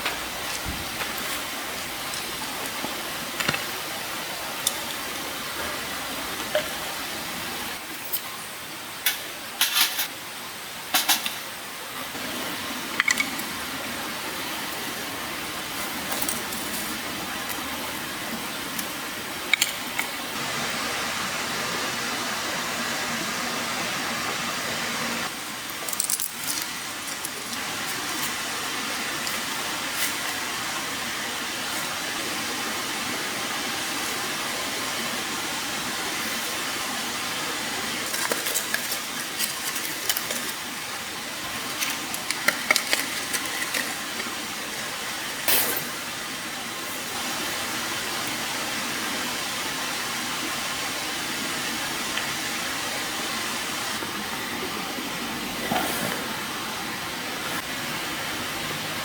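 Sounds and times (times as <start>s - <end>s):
small hard objects clinking: 25.7s - 27.6s, 38.0s - 40.6s, 41.6s - 44.4s.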